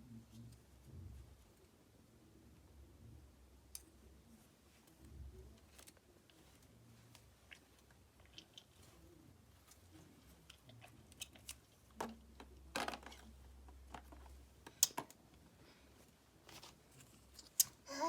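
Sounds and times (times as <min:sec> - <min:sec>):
clicks of small objects handled: 0:10.4 - 0:15.2.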